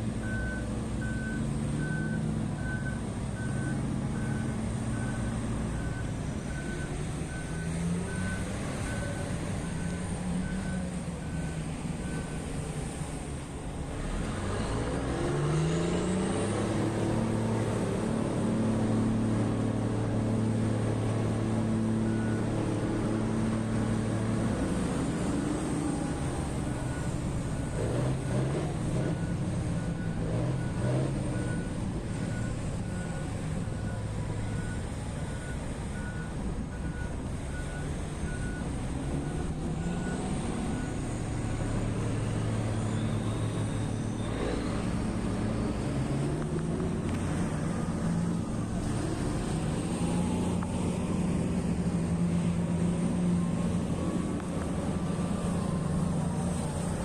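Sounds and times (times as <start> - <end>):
heavy diesel engines running: 0.0 - 57.0.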